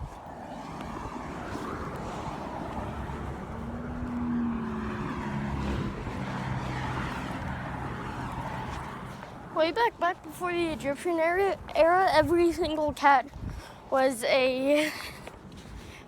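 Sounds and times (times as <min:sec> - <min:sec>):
low engine hum: 0:00.0 - 0:11.0
vehicle rumble: 0:00.0 - 0:13.2.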